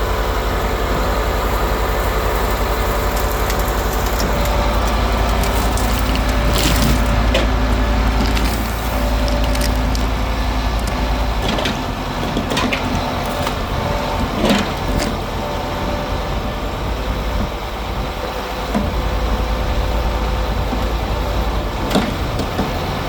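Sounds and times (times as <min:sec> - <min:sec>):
lorry engine running: 0:00.0 - 0:23.0
wood cracking and splintering: 0:02.4 - 0:15.4.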